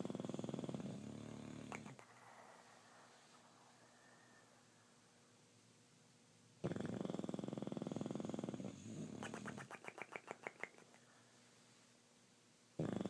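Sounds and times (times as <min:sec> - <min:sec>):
dog snoring: 0:00.0 - 0:04.4, 0:06.6 - 0:09.7, 0:12.8 - 0:13.0.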